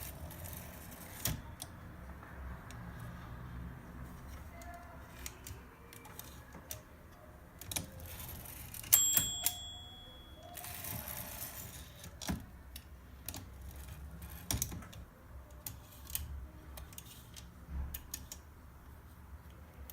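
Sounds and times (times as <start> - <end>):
typewriter bell ring: 8.1 - 12.1.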